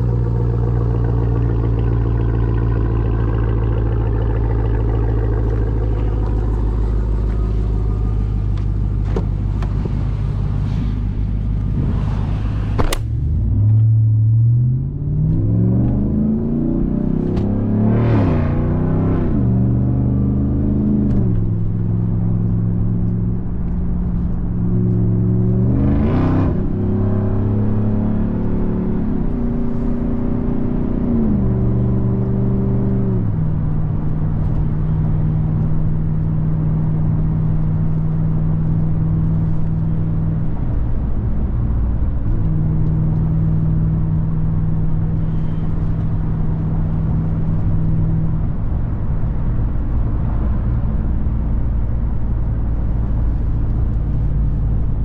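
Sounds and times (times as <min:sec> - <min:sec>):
truck engine running: 0:00.0 - 0:13.5.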